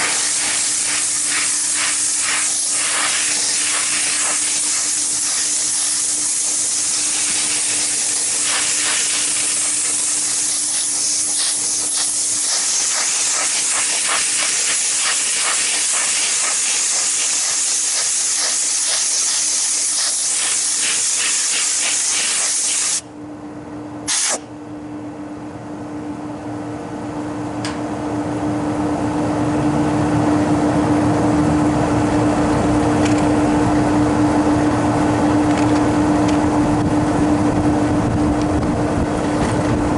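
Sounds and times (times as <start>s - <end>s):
compressed air hissing: 0.0s - 23.0s, 24.1s - 24.4s
condensing unit humming: 0.0s - 39.9s.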